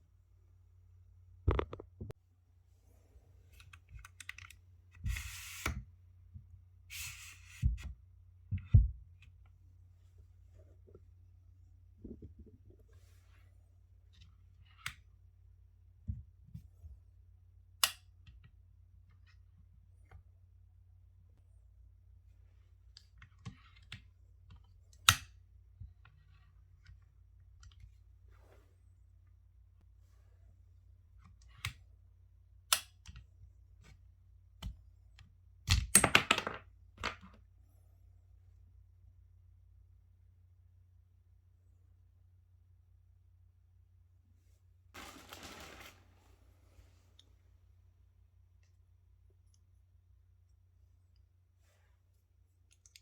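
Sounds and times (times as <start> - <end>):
packaging rustling: 45.0 - 46.4.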